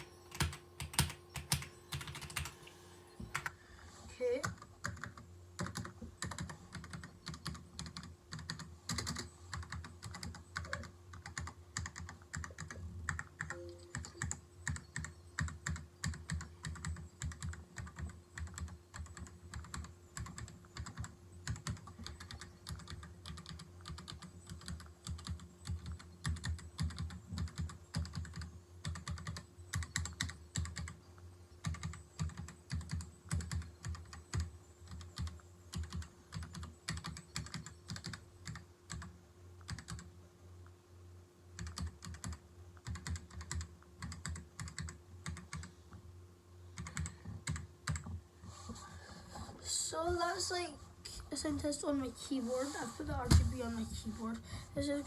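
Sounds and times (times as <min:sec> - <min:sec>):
mechanical keyboard typing: 0:00.0 - 0:02.7, 0:04.4 - 0:31.0, 0:31.6 - 0:40.1, 0:41.6 - 0:45.7, 0:46.8 - 0:48.1.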